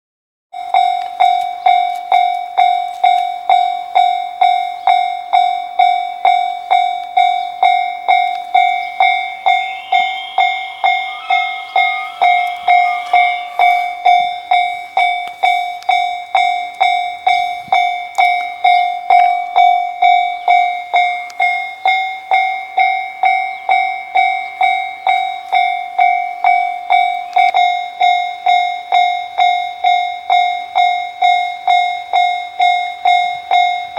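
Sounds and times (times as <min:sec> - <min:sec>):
level crossing alarm chime: 0:00.6 - 0:33.9.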